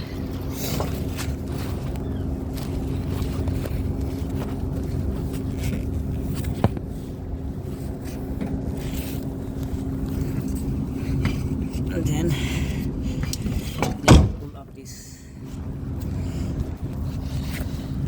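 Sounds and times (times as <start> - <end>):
low mechanical drone: 0.0 - 18.0.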